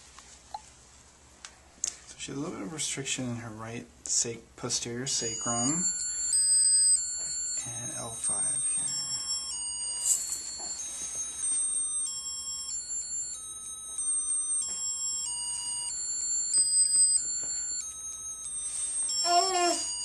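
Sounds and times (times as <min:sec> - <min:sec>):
electronic toy beeping melody: 0:05.2 - 0:20.0.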